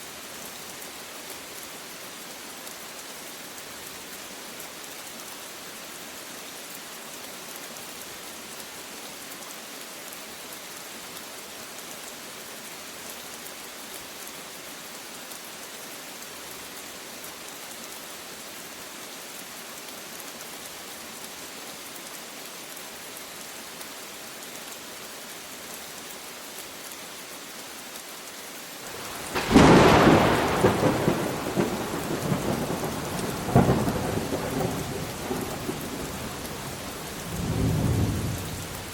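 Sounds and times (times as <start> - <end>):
steady rain hissing: 0.0 - 38.9
rumbling thunder: 28.9 - 38.9.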